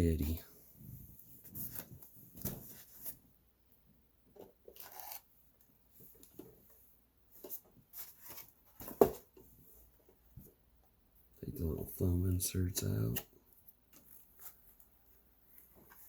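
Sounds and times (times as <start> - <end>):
packaging rustling and scraping: 4.7 - 5.3, 7.4 - 9.3.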